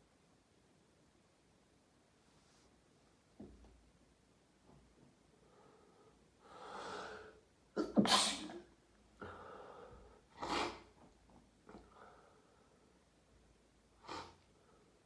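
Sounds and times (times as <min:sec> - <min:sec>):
person sneezing: 0:07.8 - 0:08.7, 0:10.4 - 0:11.0.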